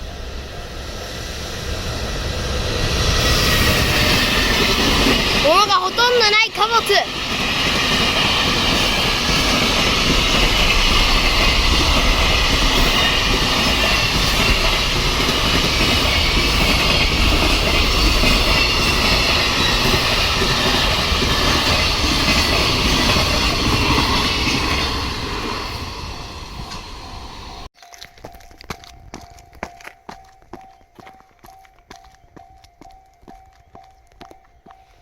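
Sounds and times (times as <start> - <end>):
freight train wheels on rails: 0.0 - 27.7.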